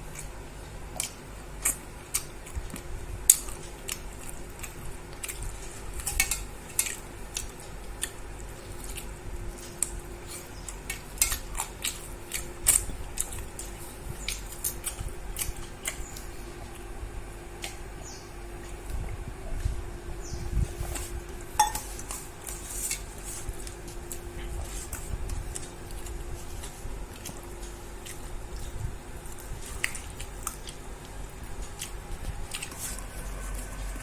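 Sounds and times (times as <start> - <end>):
faint steady hum: 0.0 - 34.0
cutlery clicking on plate: 21.6 - 22.2.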